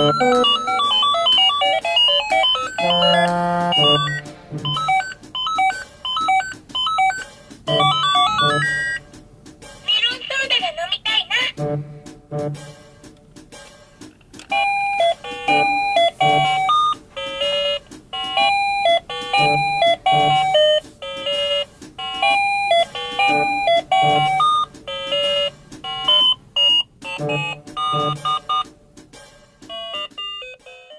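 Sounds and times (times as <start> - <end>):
electronic toy jingle beeping: 0.0 - 9.1, 14.5 - 28.7, 29.7 - 30.9.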